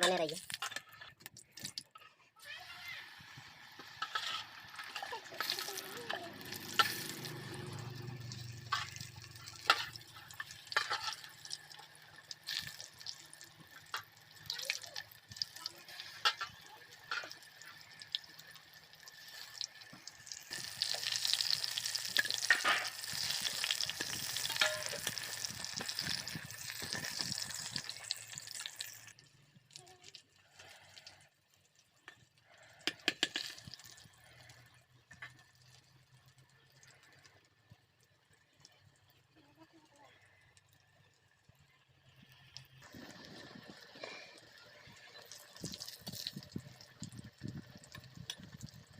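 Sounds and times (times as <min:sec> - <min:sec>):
metal utensil scraping pan: 0:00.0 - 0:01.2, 0:03.7 - 0:11.7, 0:20.4 - 0:27.5
food sizzling in hot oil: 0:00.0 - 0:01.8, 0:02.4 - 0:29.3, 0:32.0 - 0:36.8, 0:42.0 - 0:48.9.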